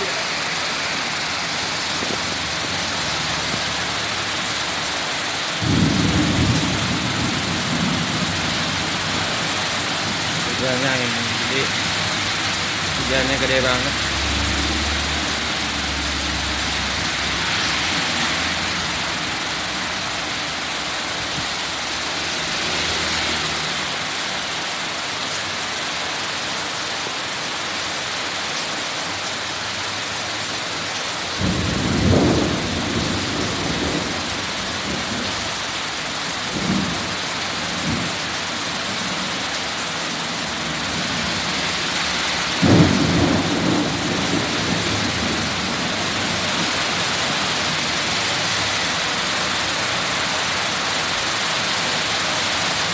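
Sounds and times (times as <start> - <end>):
heavy rain pouring: 0.0 - 52.9
low rumble of thunder: 5.6 - 9.3, 31.4 - 35.4, 42.6 - 46.7.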